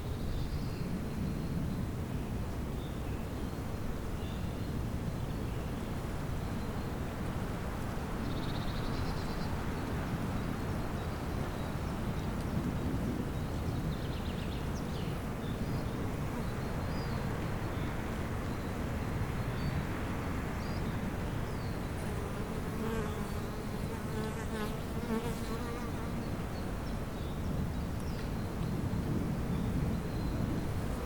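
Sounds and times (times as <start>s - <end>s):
bee buzzing: 22.0s - 26.2s.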